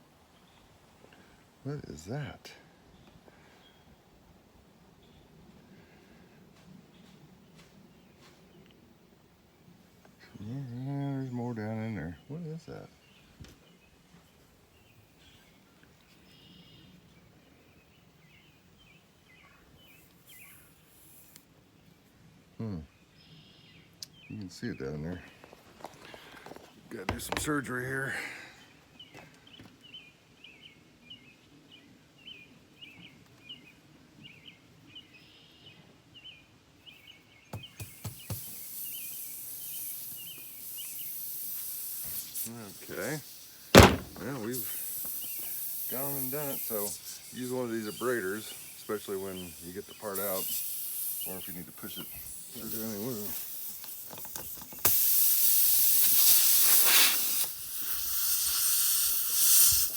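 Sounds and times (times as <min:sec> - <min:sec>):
small bird chirping: 0:17.8 - 0:21.3, 0:36.9 - 0:42.1, 0:44.0 - 0:53.3
air hissing out of tire: 0:20.2 - 0:21.4, 0:37.8 - 0:59.9.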